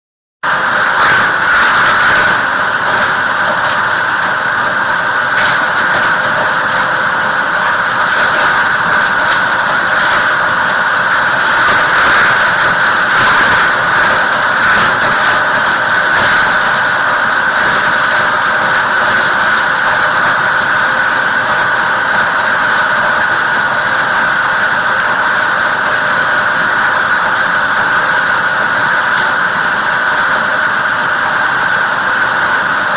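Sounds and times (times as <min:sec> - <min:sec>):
grinder running with whine: 0:00.5 - 0:32.9.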